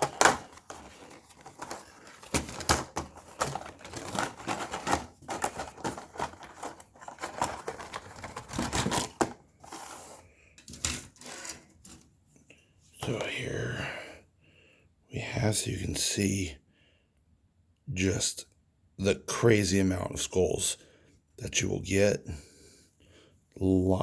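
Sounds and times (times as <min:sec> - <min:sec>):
plastic packaging crinkling: 0:00.0 - 0:12.0
small plastic parts rattling: 0:00.0 - 0:12.1.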